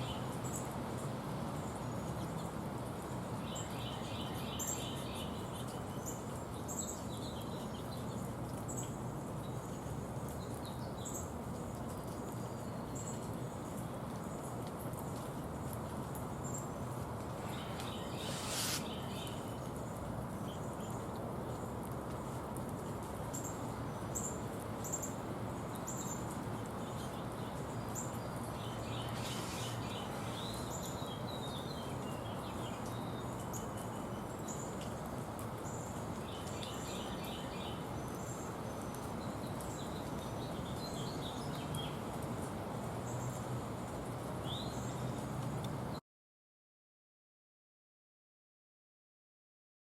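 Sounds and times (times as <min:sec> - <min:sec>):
small birds chirping: 0:00.0 - 0:21.7, 0:22.9 - 0:42.2
background hiss: 0:00.0 - 0:43.8
high ticking bird calls: 0:16.4 - 0:19.9, 0:23.3 - 0:34.9
harsh bird calls: 0:17.4 - 0:19.6, 0:28.6 - 0:31.7.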